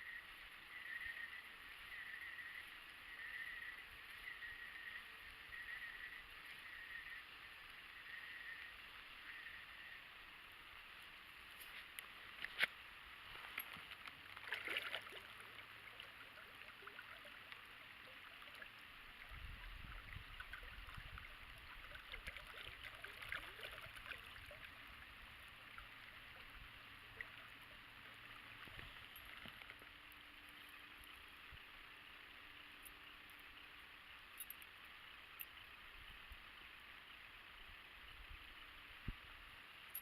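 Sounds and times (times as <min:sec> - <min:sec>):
water lapping and gurgling: 0:13.3 - 0:31.2.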